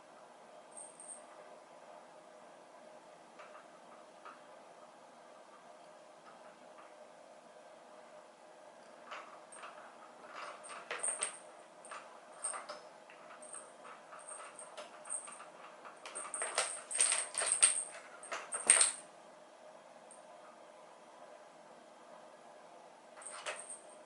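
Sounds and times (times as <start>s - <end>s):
cat toy rattling and rustling: 9.0s - 19.0s, 23.2s - 24.0s.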